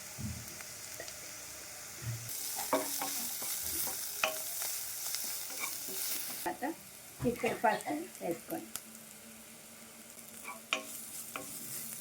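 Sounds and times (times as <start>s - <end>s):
vegetables sizzling in oil: 0.0s - 12.0s
spoon scraping and knocking pan: 2.4s - 4.6s, 5.2s - 6.5s, 10.4s - 12.0s.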